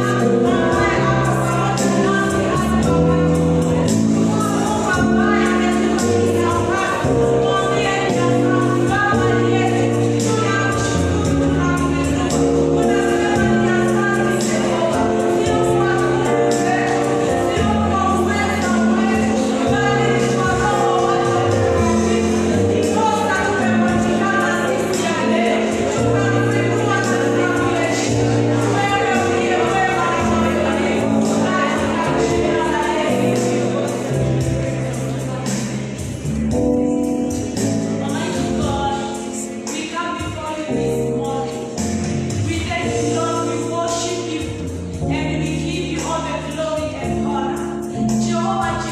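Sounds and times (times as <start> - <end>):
group singing gospel: 0.0 - 36.5
bass line: 0.0 - 39.0
percussion beat: 0.0 - 48.9.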